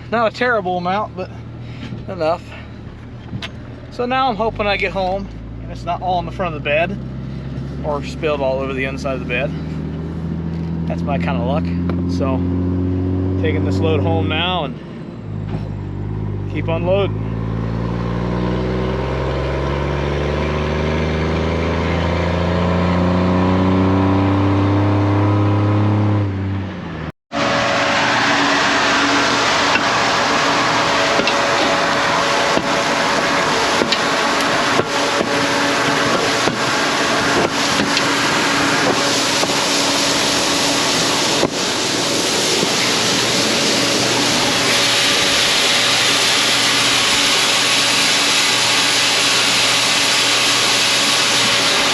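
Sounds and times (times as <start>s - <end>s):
truck engine accelerating: 0.0s - 51.9s
low hum: 26.6s - 51.9s
grain unloading machinery roaring: 27.3s - 51.9s.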